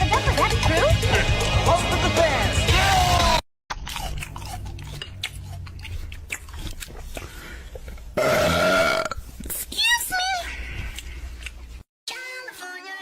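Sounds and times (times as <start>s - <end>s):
chewing crunching and clicking: 3.7s - 8.2s, 10.8s - 11.8s
loud burp: 8.2s - 9.2s.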